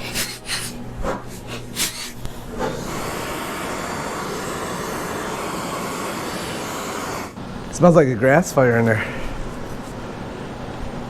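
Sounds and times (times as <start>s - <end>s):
steady rushing noise: 2.4s - 8.8s.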